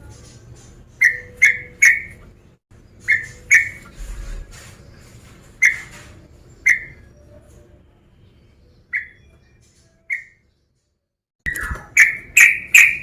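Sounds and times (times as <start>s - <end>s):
bird whistled calls: 1.0s - 2.2s, 3.0s - 4.0s, 6.6s - 7.2s, 8.9s - 9.4s, 11.5s - 13.0s.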